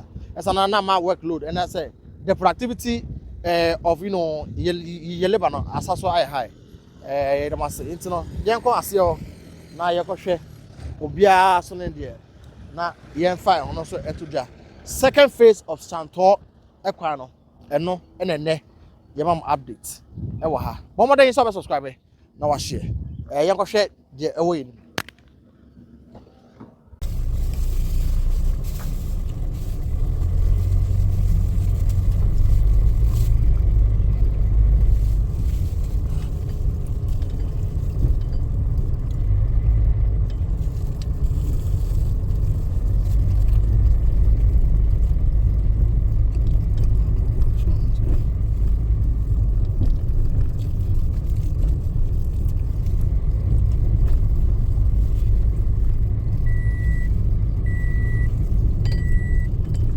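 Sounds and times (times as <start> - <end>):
vehicle engines rumbling: 0.0 - 59.9
reversing alarm beeping: 56.5 - 57.1, 57.7 - 58.3, 58.9 - 59.5.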